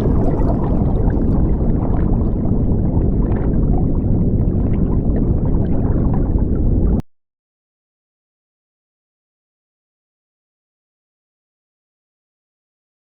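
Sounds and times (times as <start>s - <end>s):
muffled underwater rumble: 0.0s - 7.0s.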